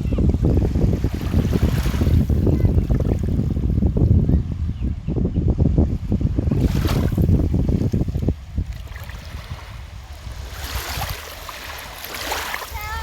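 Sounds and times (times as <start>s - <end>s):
wind buffeting microphone: 0.0s - 13.0s
seawater washing: 6.5s - 13.0s.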